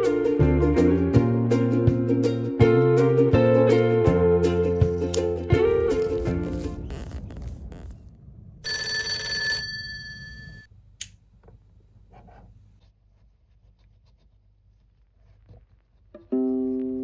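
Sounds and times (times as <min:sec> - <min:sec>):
alarm bell ringing: 0:08.7 - 0:10.7.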